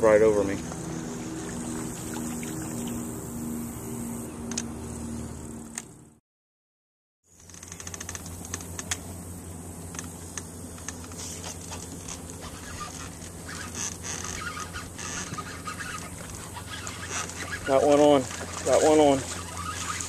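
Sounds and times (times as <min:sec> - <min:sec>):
steady low hum: 0:00.0 - 0:06.2, 0:07.3 - 0:20.0
birds chirping faintly: 0:11.6 - 0:20.0.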